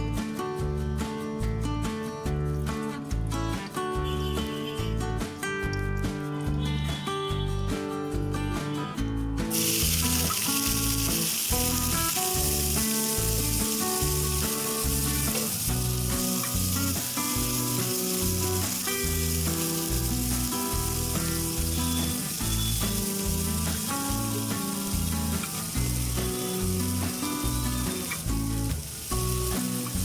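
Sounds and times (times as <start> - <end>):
music with rhythmic bass line: 0.0 - 30.0
hot oil sizzling in a pan: 9.5 - 30.0.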